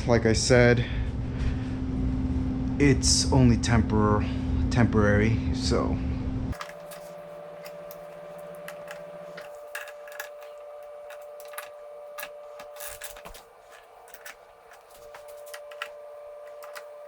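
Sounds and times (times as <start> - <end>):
faint hum: 6.3 - 17.0
clicks of handling plastic parts: 6.6 - 17.0.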